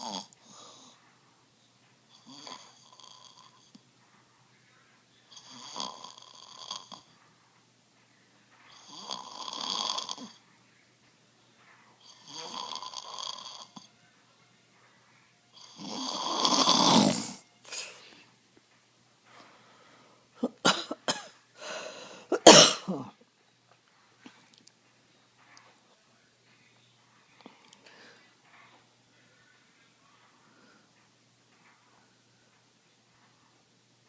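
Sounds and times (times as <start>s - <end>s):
person snoring: 0.0s - 0.6s, 5.3s - 7.1s, 8.7s - 10.4s, 12.0s - 13.9s, 15.6s - 18.0s
quiet breaths: 0.0s - 20.4s, 21.4s - 22.4s, 23.0s - 34.0s.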